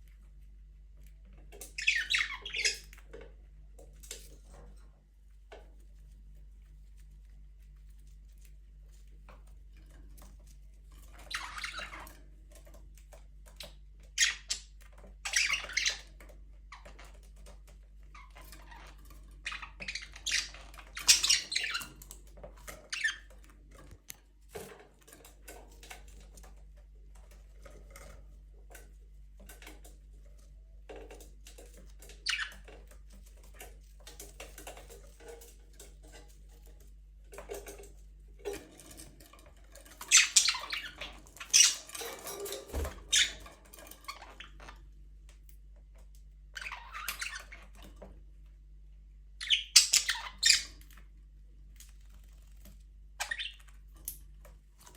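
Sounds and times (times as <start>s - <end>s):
budgerigars chirping: 49.4s - 50.7s.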